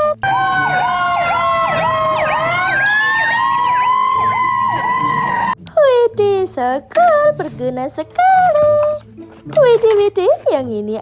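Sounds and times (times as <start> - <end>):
fire engine siren wailing: 0.0 - 5.6
siren yelp: 0.0 - 5.6.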